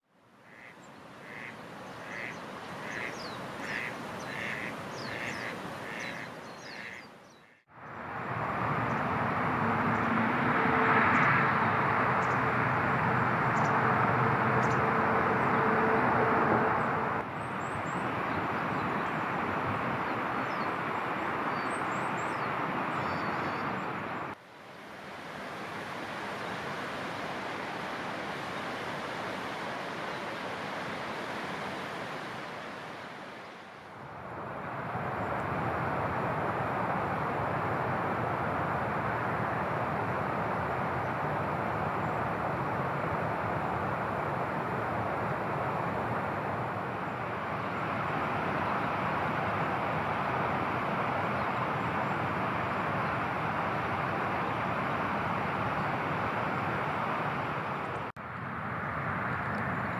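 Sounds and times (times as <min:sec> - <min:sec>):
bird calling: 0:00.4 - 0:07.6.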